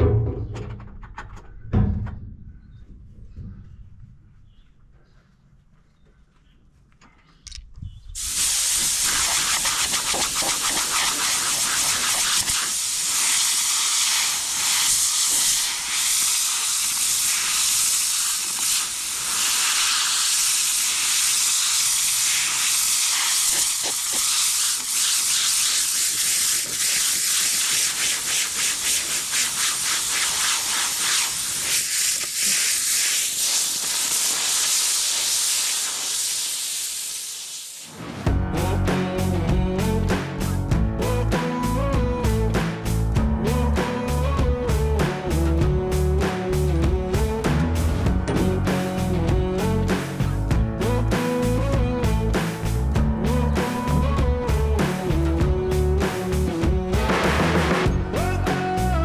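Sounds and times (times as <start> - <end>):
compressed air blowgun hissing: 8.2 - 38.0.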